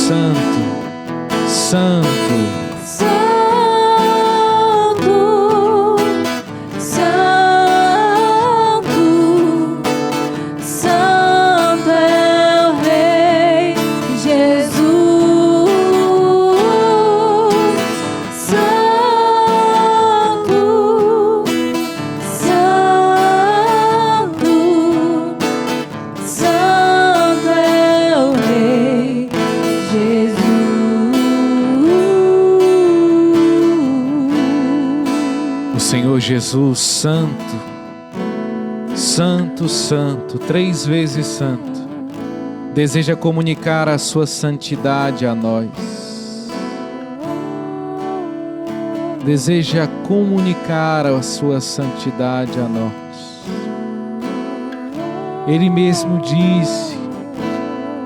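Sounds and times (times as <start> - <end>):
person singing worship song: 0.0 - 58.0
strummed acoustic guitar: 0.0 - 58.0.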